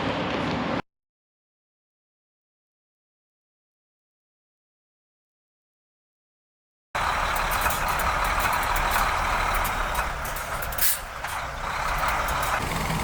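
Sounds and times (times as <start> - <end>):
heavy vehicle running: 0.0 - 0.8, 7.0 - 13.0.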